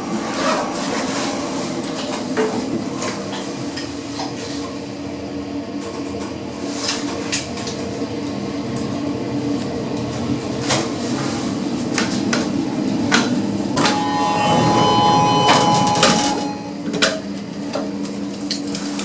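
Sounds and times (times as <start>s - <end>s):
lift running hum: 1.6s - 17.5s
electronic two-note tone: 13.8s - 17.0s.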